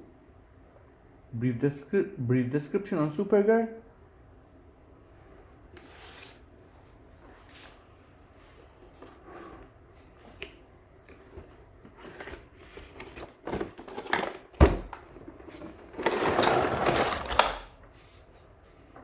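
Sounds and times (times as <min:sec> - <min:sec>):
packaging rustling and scraping: 0:11.1 - 0:17.7.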